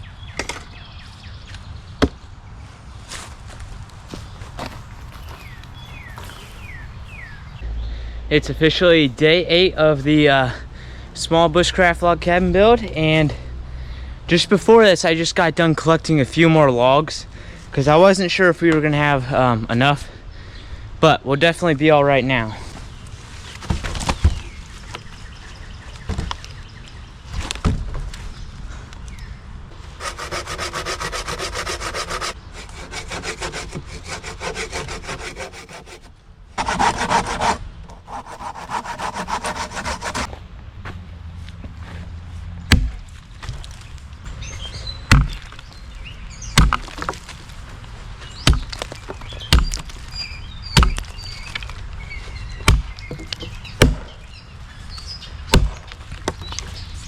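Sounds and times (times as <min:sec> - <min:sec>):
hand saw cutting log: 0:04.6 - 0:06.8, 0:29.9 - 0:40.3.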